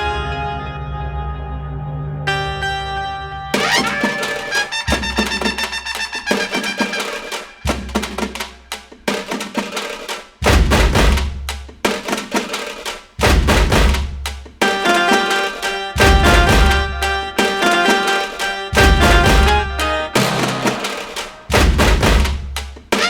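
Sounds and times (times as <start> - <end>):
pitched instruments: 0.0 - 9.4, 14.6 - 22.0
drums and percussion: 3.6 - 23.0.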